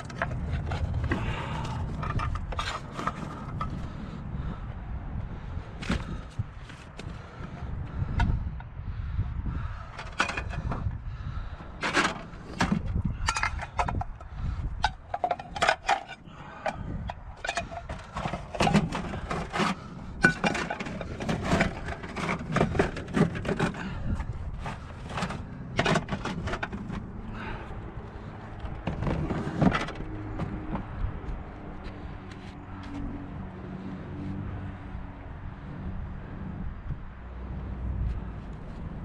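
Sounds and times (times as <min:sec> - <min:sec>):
hard objects clattering: 0:00.0 - 0:03.9, 0:09.9 - 0:10.9, 0:11.8 - 0:27.6.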